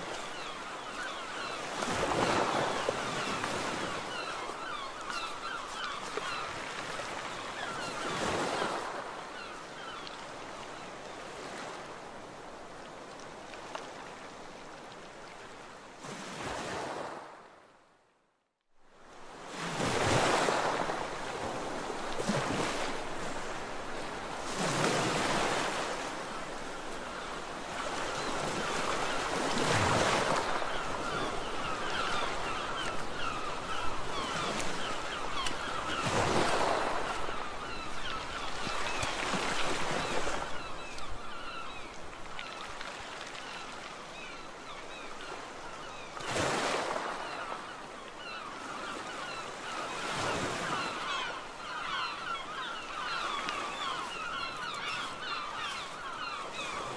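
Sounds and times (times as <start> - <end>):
sea waves breaking on beach: 0.0 - 17.7, 19.0 - 56.9.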